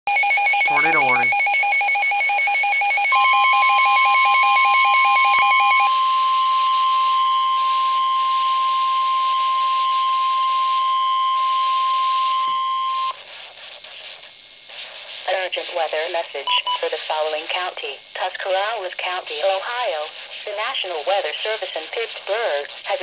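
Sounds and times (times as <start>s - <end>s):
steady single-pitched alarm tone: 0.1s - 13.2s.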